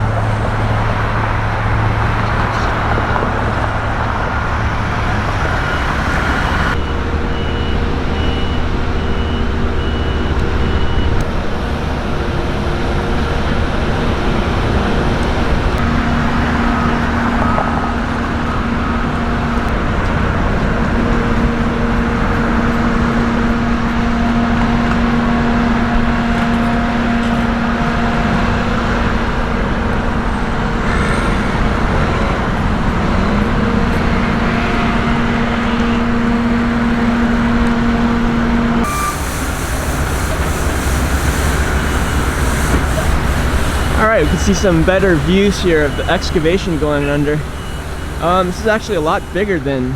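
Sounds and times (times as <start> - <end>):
heavy vehicle engines running: 0.0 - 49.9
road traffic: 0.0 - 49.9.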